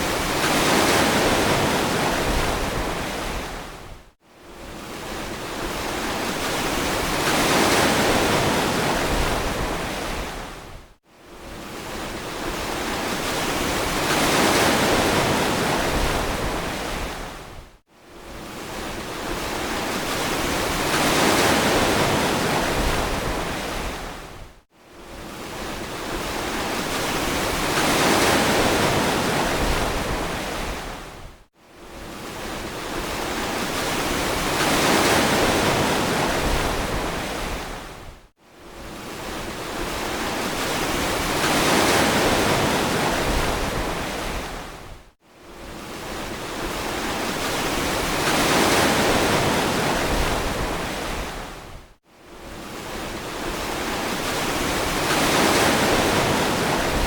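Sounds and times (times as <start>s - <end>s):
ocean waves washing in: 52.4s - 57.0s.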